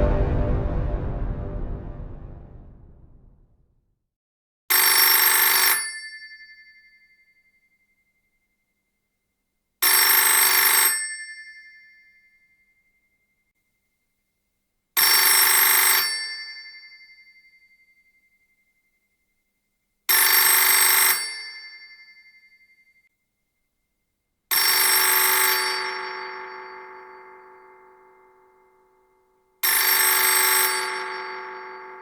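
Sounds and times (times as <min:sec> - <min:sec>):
old telephone bell ringing: 0:04.9 - 0:07.4, 0:09.9 - 0:11.9, 0:15.0 - 0:17.8, 0:20.2 - 0:22.7, 0:29.6 - 0:32.0.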